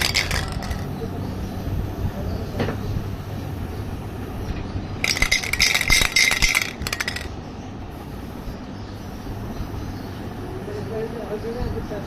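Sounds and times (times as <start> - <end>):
spray can rattling when shaken: 0.0 - 1.0, 5.0 - 7.4.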